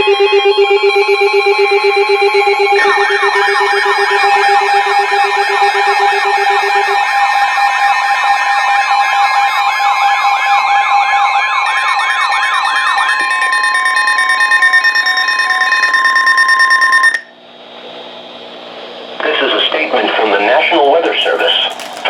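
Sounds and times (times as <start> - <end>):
yelp siren: 0.0 - 17.3
steady alarm tones: 0.0 - 17.4, 19.3 - 22.0.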